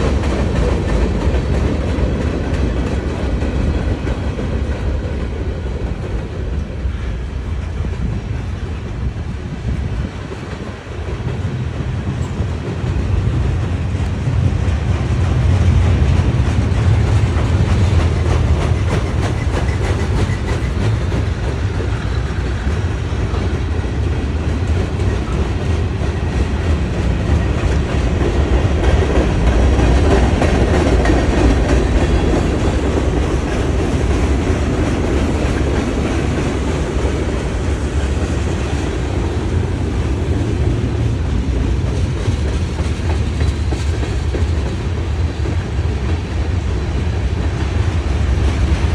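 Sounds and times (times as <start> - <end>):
train low rumble: 0.0 - 48.9
train wheels clacking: 0.0 - 48.9.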